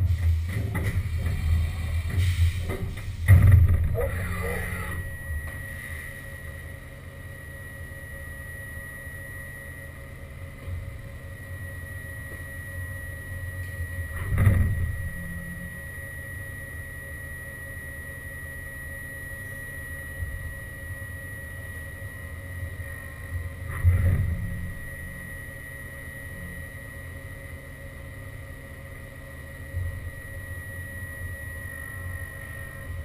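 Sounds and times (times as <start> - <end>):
milling machine whining: 0.0 - 33.0.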